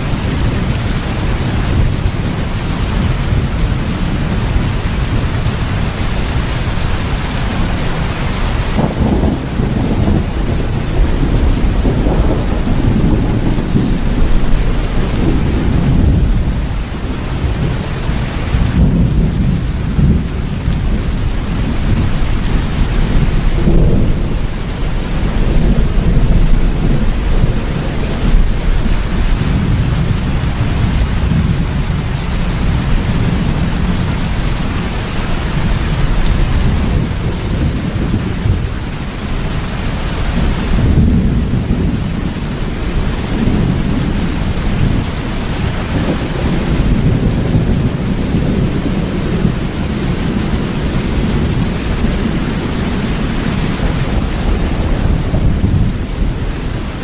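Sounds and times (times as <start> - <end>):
heavy rain: 0.0 - 57.0
thunder rumbling: 0.0 - 57.0.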